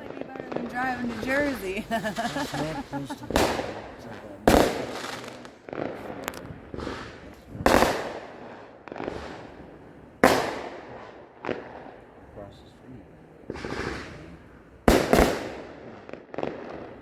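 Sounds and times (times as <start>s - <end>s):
fireworks bangs with echo: 0.0s - 12.5s, 13.4s - 17.0s
small firework pops: 3.3s - 9.6s, 10.2s - 11.9s, 13.5s - 17.0s.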